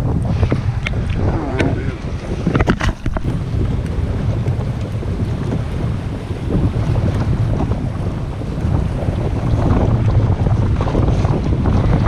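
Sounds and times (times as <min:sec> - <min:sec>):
wind buffeting microphone: 0:00.0 - 0:12.0
sharp clicks or knocks: 0:02.5 - 0:03.3.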